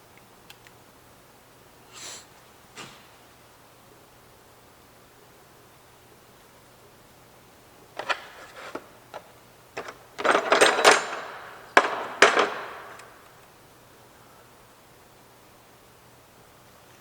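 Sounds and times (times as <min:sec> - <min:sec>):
small tool parts clicking and rattling: 0:08.0 - 0:13.4
sharp knocks: 0:09.8 - 0:13.3.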